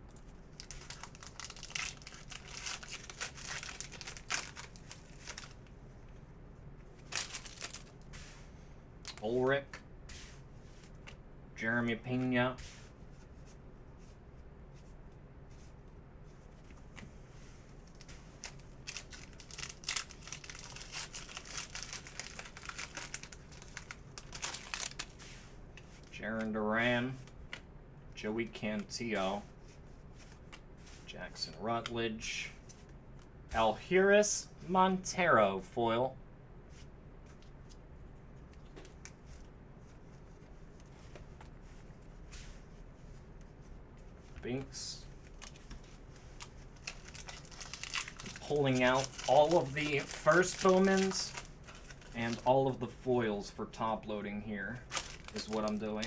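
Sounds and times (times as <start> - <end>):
card rustle: 0.1 - 5.7, 6.9 - 8.4, 17.8 - 26.1, 44.1 - 52.5, 54.8 - 56.0
plastic packaging crackling: 0.1 - 5.7, 7.0 - 8.1, 17.9 - 25.2, 45.1 - 52.6, 54.8 - 56.0.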